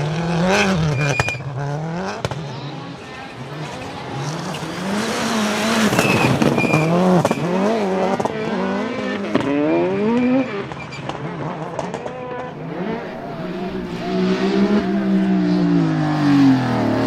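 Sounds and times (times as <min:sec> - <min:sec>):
rally car engine revving: 0:00.0 - 0:17.0
tyre squeal: 0:00.6 - 0:01.5, 0:04.4 - 0:07.8.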